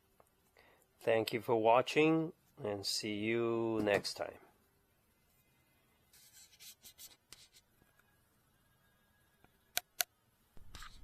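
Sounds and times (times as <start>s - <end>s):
faint rubbing and scraping: 5.2s - 7.7s.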